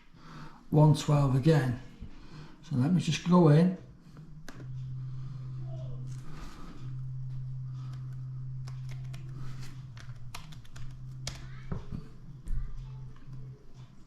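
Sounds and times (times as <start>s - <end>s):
steady low hum: 0.0s - 14.0s
laptop keyboard typing: 7.8s - 11.6s.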